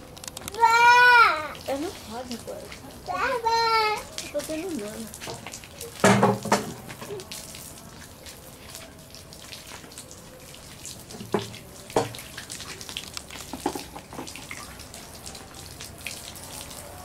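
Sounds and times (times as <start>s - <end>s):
loud knocks: 6.0s - 6.8s
bonfire crackling: 10.8s - 16.9s.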